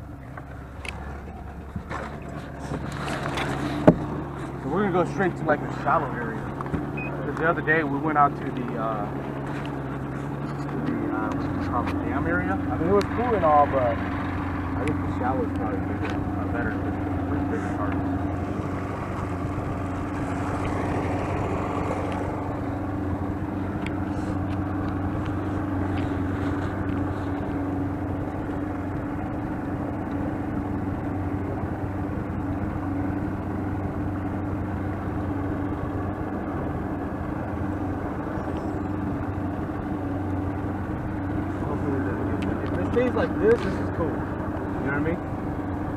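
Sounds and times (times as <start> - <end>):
boat motor running: 0.0 - 45.9.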